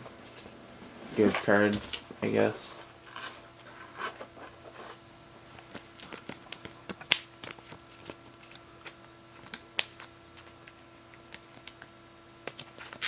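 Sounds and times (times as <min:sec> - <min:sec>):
trading cards tapping and rustling: 0:05.6 - 0:10.6
card snaps: 0:05.7 - 0:10.1.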